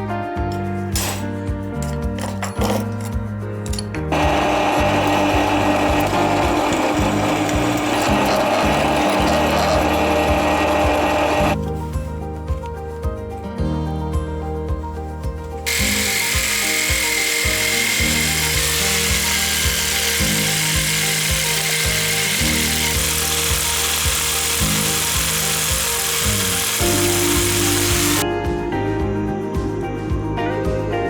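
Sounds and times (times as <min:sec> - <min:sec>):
background music: 0:00.0 - 0:31.0
power tool grinding and hissing: 0:04.1 - 0:11.6, 0:15.7 - 0:28.2.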